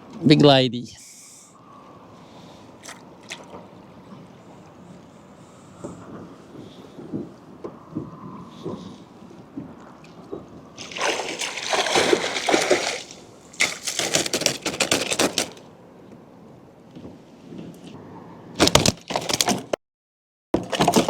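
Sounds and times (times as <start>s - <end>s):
water splashing: 2.8s - 3.6s, 10.8s - 15.6s.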